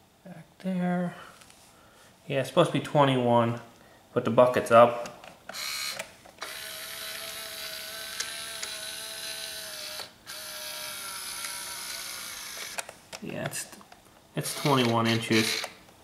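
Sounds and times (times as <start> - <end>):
small electric motor whining: 5.5 - 12.8, 14.4 - 15.8.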